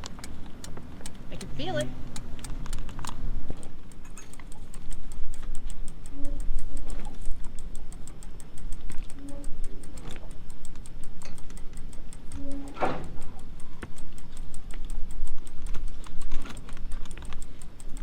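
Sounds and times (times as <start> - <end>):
hand crank ticking: 0.0 - 18.0
gear squeak: 6.0 - 7.2, 9.1 - 10.2, 12.3 - 13.4.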